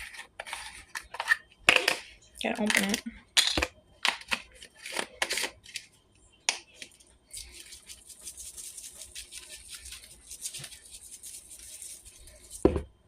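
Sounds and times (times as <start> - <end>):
seasoning granules rattling in shaker: 7.3 - 12.7.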